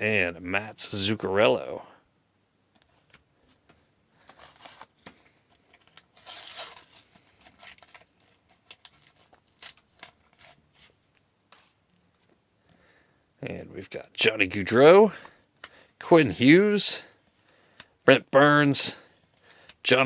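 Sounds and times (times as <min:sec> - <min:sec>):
sticker pack tearing: 0:06.1 - 0:10.6.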